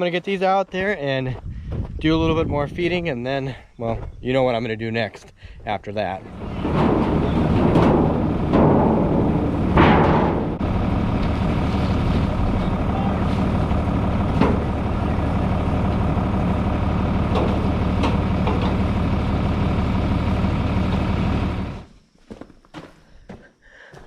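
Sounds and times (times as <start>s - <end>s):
engine running steadily: 6.2s - 21.9s.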